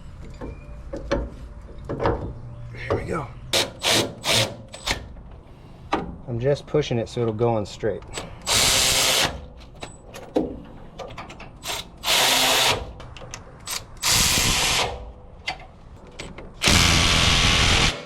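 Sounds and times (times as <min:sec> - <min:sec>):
power tool running: 0:16.6 - 0:18.0.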